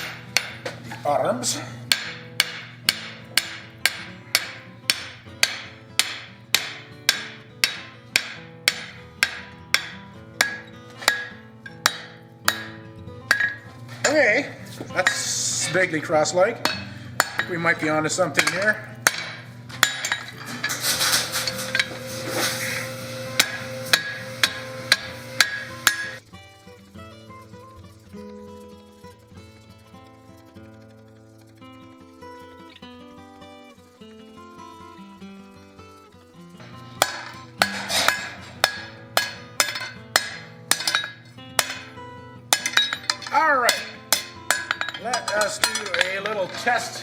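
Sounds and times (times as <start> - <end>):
hammer blows on hot steel: 0.0 - 26.2, 36.6 - 47.0.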